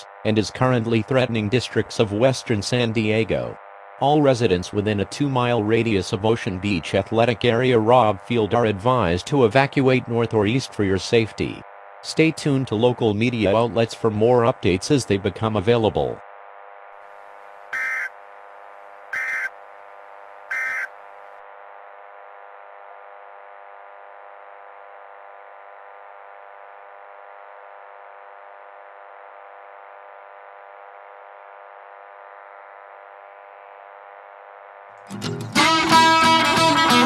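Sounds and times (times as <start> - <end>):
steady buzzing drone: 0.0 - 37.0
harsh digital warbles: 17.8 - 18.1, 19.2 - 19.5, 20.5 - 20.9.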